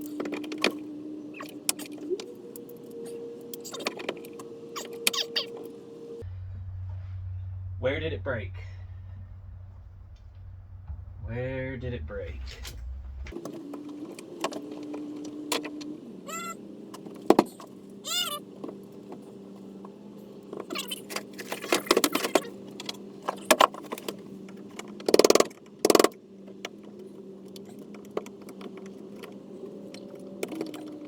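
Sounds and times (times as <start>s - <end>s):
steady low hum: 0.0s - 16.9s
short pitch-bending squeaks: 4.7s - 5.7s.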